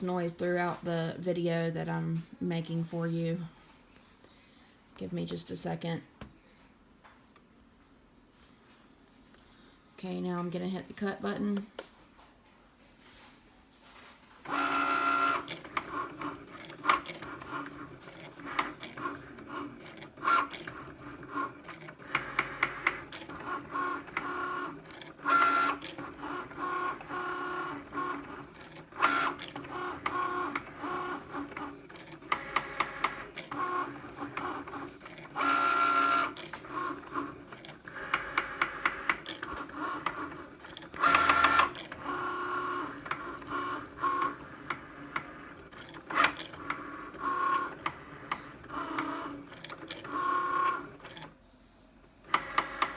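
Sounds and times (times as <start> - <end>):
cutting machine motors whirring: 14.4 - 51.4, 52.2 - 52.9.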